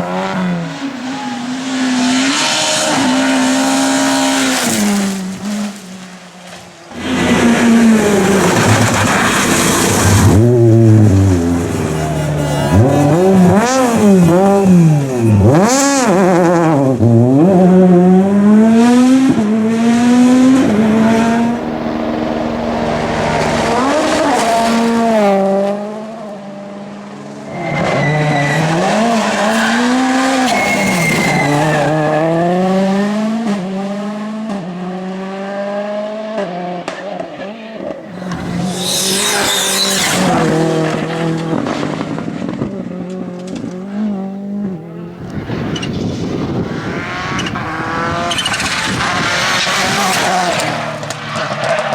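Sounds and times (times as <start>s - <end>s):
rally car engines revving: 0.0s - 51.9s
sharp high-pitched screech: 11.6s - 15.6s, 27.5s - 32.6s, 38.6s - 40.4s
tyre squeal: 27.4s - 32.6s, 38.2s - 40.6s, 48.3s - 49.1s.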